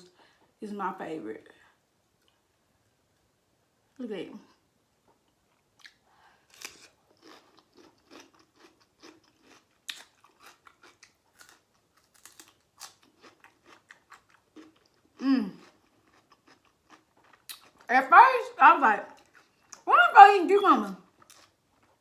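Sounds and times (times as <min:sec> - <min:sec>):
wet chewing and crunching: 0:05.5 - 0:17.9, 0:19.0 - 0:19.9, 0:21.0 - 0:22.0.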